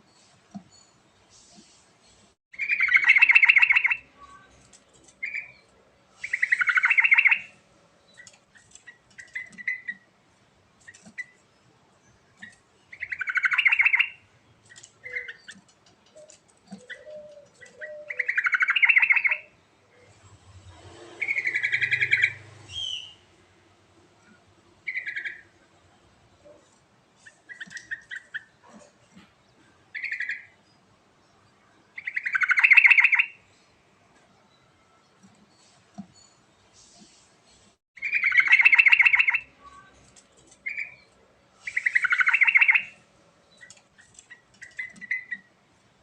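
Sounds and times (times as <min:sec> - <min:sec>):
bulbul singing: 0:06.2 - 0:10.1, 0:12.4 - 0:19.6, 0:40.6 - 0:45.5.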